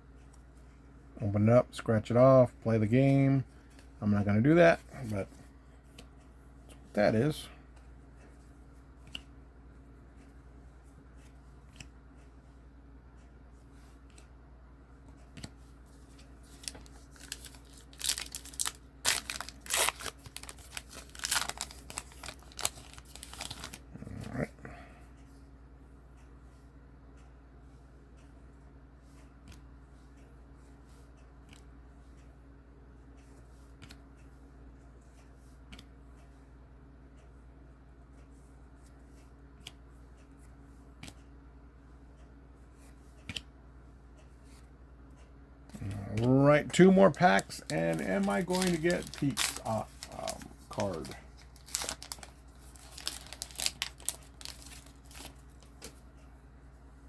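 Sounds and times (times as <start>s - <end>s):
low steady hum: 0.0s - 57.0s
cards rustling: 15.2s - 24.4s, 45.8s - 56.0s
wrapper crinkling and tearing: 16.6s - 23.8s, 47.0s - 55.6s.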